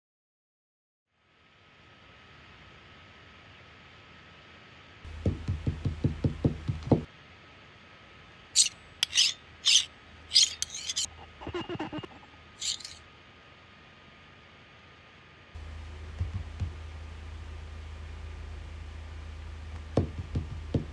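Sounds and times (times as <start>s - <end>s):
scraping strokes: 8.6s - 13.0s.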